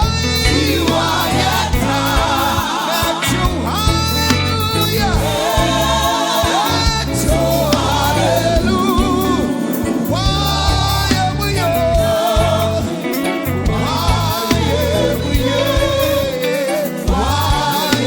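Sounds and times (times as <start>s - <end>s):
band playing bass and drums: 0.0s - 18.0s
gospel singing voices: 0.0s - 18.0s.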